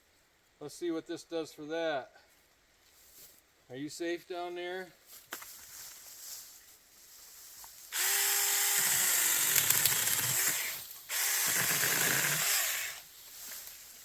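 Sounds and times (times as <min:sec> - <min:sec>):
electric chainsaw cutting tree: 0:07.9 - 0:13.1.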